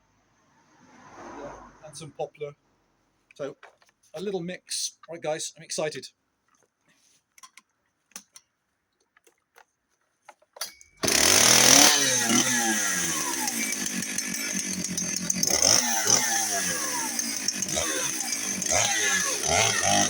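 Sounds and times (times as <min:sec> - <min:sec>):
chainsaw running: 0:11.0 - 0:20.0.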